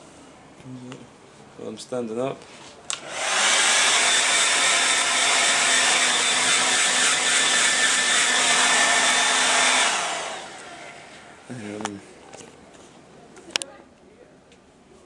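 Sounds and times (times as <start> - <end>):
hair dryer blowing: 2.9 - 11.6.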